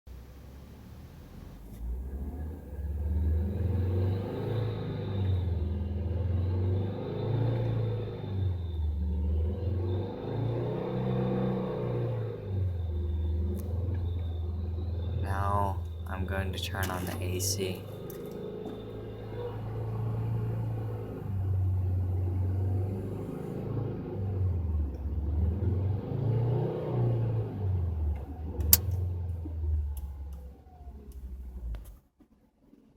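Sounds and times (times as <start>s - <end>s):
car engine starting and running: 0.0s - 32.1s.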